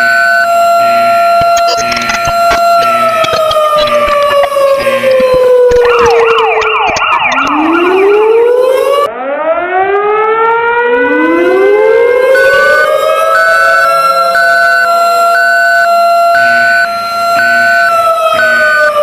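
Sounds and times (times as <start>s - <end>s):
falling siren tone: 0.0s - 19.0s
sirens winding up: 0.0s - 19.0s
warbling siren: 0.0s - 19.0s
repeating beep: 1.4s - 8.2s.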